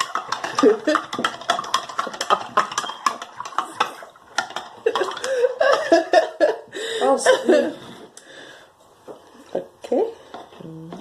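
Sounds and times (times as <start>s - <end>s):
slime being stirred in bowl: 0.0s - 6.4s.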